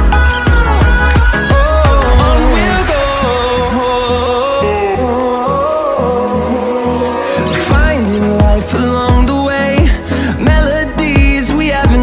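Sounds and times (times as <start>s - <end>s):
steady bass: 0.0s - 7.0s
person singing: 0.0s - 12.0s
sustained synth notes: 1.5s - 6.2s.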